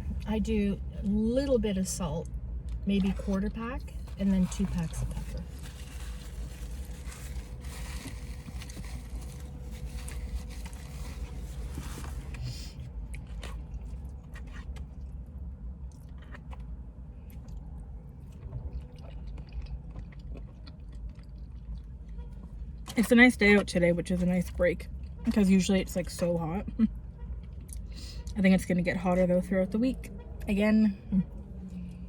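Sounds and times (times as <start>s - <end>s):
steady low rumble: 0.0s - 32.0s
chewing and biting: 2.6s - 22.9s
utensil scraping a container: 4.0s - 12.4s.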